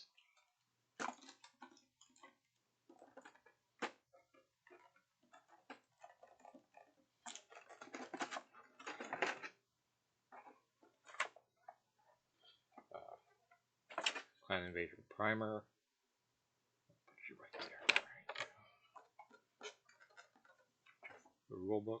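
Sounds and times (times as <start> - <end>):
board game pieces clicking and tapping: 0.1 - 9.6, 10.4 - 14.2.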